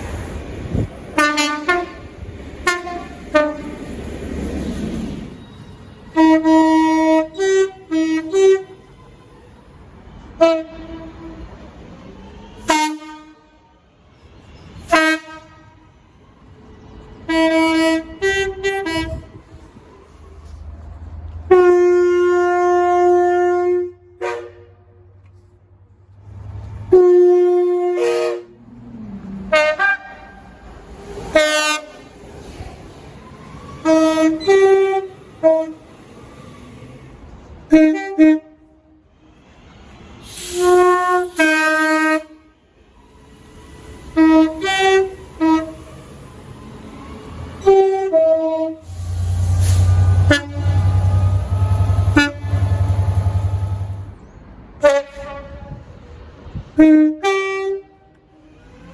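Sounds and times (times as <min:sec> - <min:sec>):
long train horn blasts: 0:01.1 - 0:03.9, 0:05.3 - 0:08.9, 0:10.3 - 0:11.5, 0:12.6 - 0:13.8, 0:14.8 - 0:15.9, 0:17.2 - 0:19.7, 0:21.4 - 0:25.5, 0:26.8 - 0:28.7, 0:29.5 - 0:30.6, 0:31.3 - 0:32.1, 0:33.8 - 0:36.0, 0:37.6 - 0:39.0, 0:40.3 - 0:42.6, 0:43.7 - 0:46.6, 0:47.6 - 0:54.2, 0:54.8 - 0:58.7
two-note train horn blasts: 0:26.9 - 0:28.6, 0:47.6 - 0:54.1.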